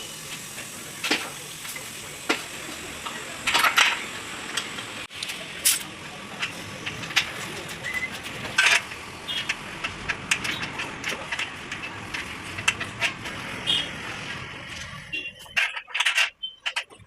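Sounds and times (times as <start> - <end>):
steady background hum: 0.0 - 17.0
metal tools clinking and knocking: 15.4 - 17.0.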